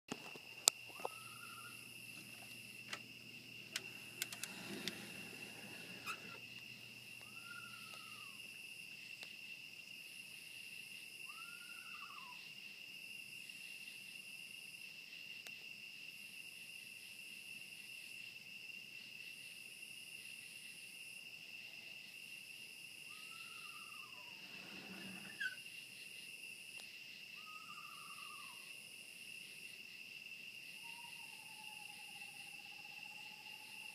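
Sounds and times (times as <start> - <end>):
night insects chorus: 0.1 - 33.9
night animal wailing call: 0.9 - 2.7, 7.1 - 8.6, 11.2 - 12.5, 23.0 - 25.7, 27.4 - 28.8, 30.8 - 33.9.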